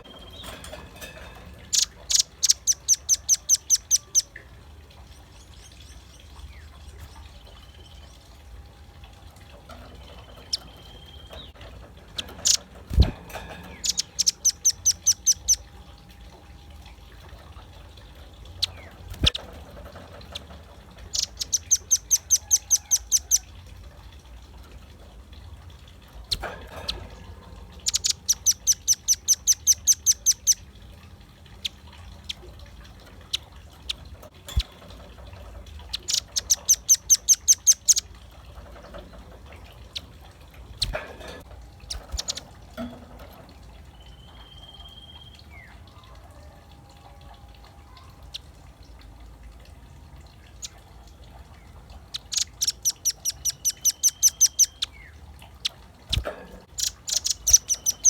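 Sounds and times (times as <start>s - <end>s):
faint bird chirps: 0.0s - 8.4s, 9.7s - 16.1s, 18.1s - 23.5s, 26.3s - 30.6s, 33.2s - 40.1s, 40.8s - 48.5s, 50.5s - 58.0s
bird calling sharp repeated notes: 1.7s - 4.4s, 13.8s - 15.6s, 52.2s - 55.1s, 56.1s - 58.0s.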